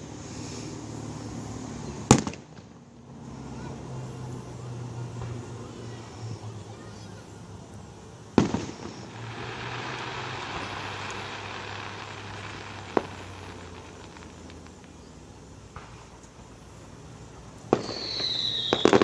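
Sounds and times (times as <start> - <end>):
fireworks hiss: 0.0 - 19.0
fireworks bangs: 2.1 - 2.8, 8.3 - 16.6, 17.4 - 19.0.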